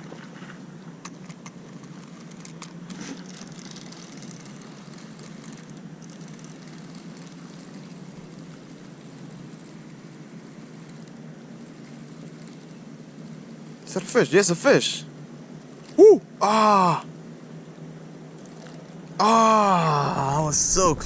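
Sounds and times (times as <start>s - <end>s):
low background rumble: 15.0s - 21.0s.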